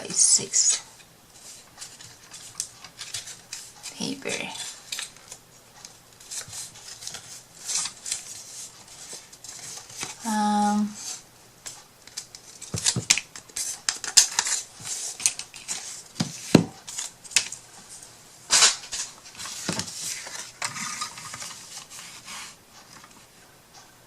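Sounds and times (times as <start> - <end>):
paper rustling: 12.0 - 16.0
craft tools clicking and knocking: 12.7 - 13.2.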